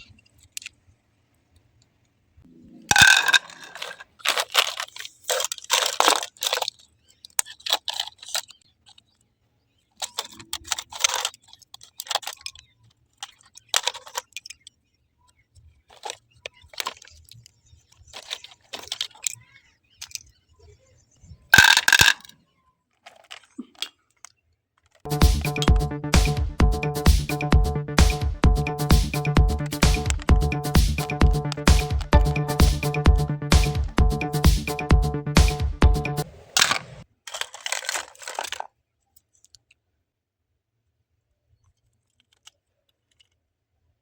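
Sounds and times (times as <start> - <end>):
metal scrap parts clinking: 2.9 - 6.7, 36.6 - 38.7.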